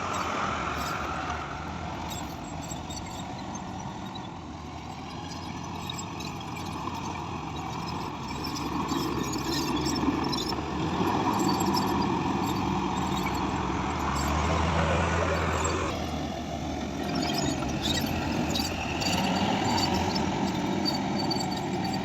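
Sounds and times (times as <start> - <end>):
high squeaks: 0.0 - 16.0, 17.0 - 22.0
construction machinery diesel engine: 0.0 - 22.0.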